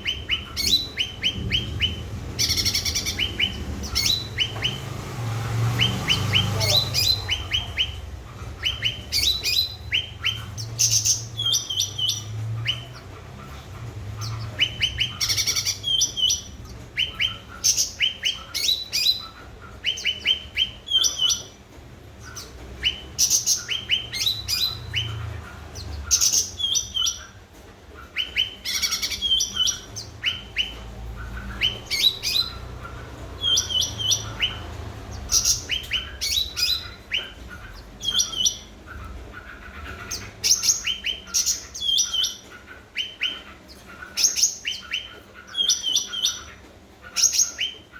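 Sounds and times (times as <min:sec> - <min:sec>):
songbird chirping: 0:00.0 - 0:47.9.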